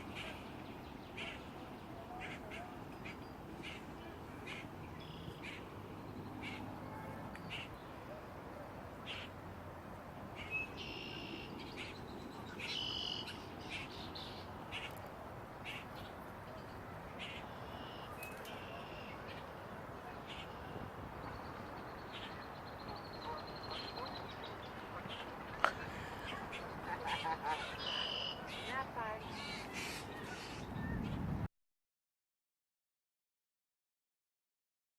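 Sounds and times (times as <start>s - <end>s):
blackbirds chipping and whistling: 0.0s - 6.8s, 9.0s - 9.4s, 10.4s - 15.0s, 20.2s - 31.3s.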